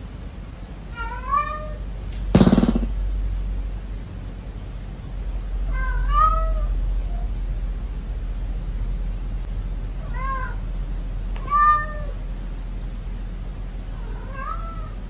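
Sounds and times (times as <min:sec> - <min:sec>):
cat meowing: 0:00.9 - 0:01.8, 0:05.7 - 0:06.7, 0:10.0 - 0:10.6, 0:11.4 - 0:12.2, 0:14.0 - 0:15.0.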